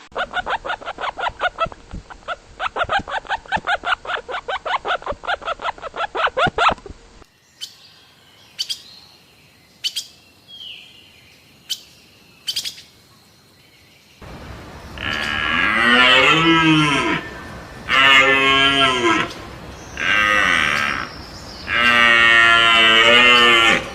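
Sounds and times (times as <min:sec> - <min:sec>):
livestock calling: 0:14.7 - 0:23.9.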